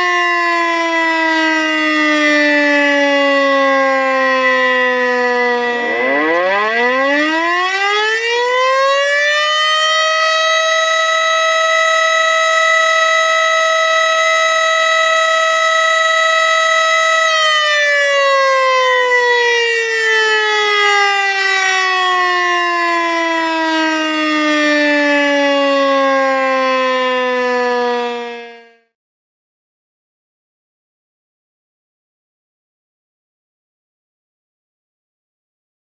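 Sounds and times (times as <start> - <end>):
tornado siren wailing: 0.0 - 29.0
steady high tone: 4.7 - 7.9.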